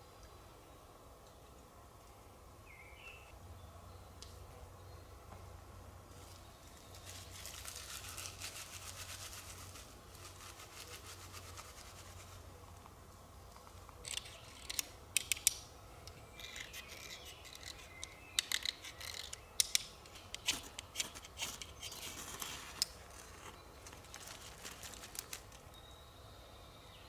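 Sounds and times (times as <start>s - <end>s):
hand scraping strokes: 6.1s - 12.7s.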